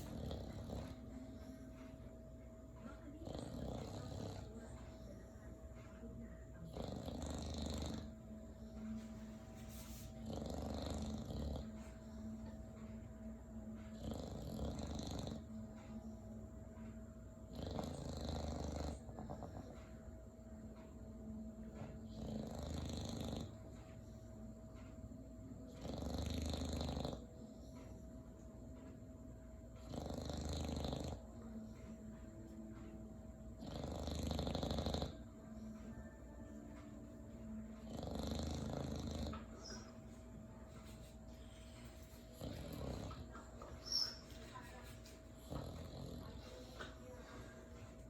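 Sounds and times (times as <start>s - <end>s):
dog snoring: 0.0s - 2.0s, 2.8s - 5.3s, 6.5s - 12.6s, 13.8s - 16.0s, 17.4s - 20.1s, 21.8s - 24.1s, 25.6s - 28.0s, 29.8s - 32.1s, 33.5s - 48.0s.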